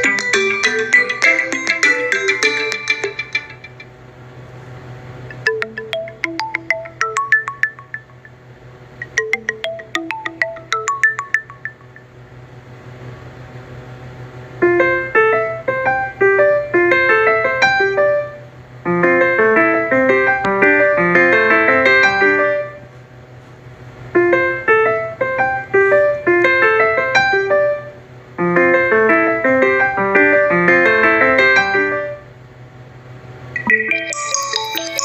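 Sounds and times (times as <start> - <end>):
phone ringtone melody: 0.0 - 3.8, 5.3 - 12.2, 33.6 - 35.0.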